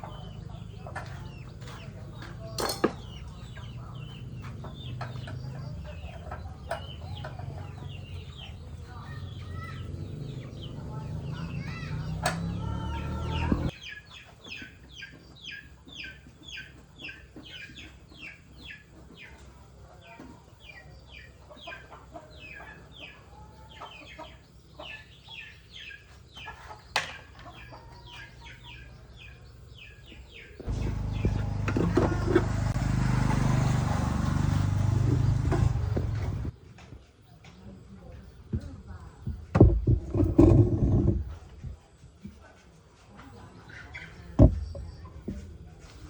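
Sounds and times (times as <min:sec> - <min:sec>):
chickens calling: 0:00.0 - 0:36.6, 0:43.0 - 0:46.0.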